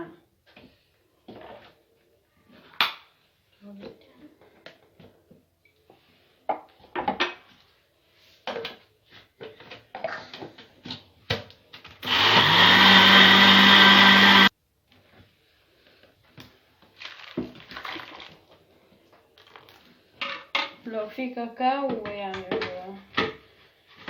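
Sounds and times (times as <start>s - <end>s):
electric kitchen mixer running: 12.0s - 14.5s.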